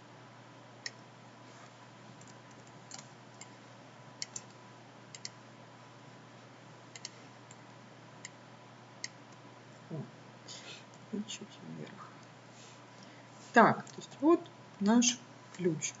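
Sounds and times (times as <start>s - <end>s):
faint electrical hum: 0.0s - 16.0s
computer mouse clicking: 2.2s - 3.5s, 4.2s - 5.4s, 6.9s - 7.6s, 9.0s - 9.4s.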